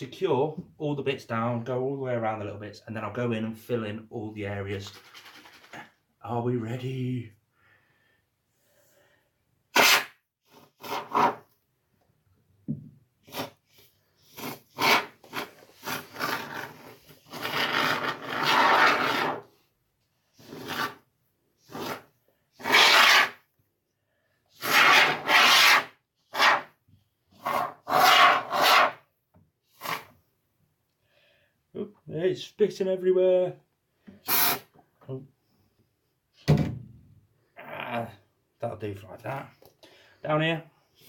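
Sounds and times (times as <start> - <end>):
spray foam can hissing bursts: 34.3 - 34.6.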